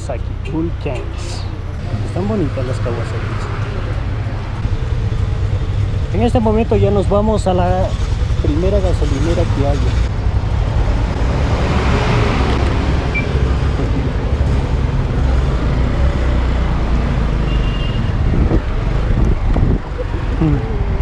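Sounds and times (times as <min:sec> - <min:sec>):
road noise: 0:00.0 - 0:21.0
motorcycle engine running: 0:04.4 - 0:11.1
vehicle passing: 0:07.9 - 0:17.5
wind noise: 0:17.8 - 0:21.0.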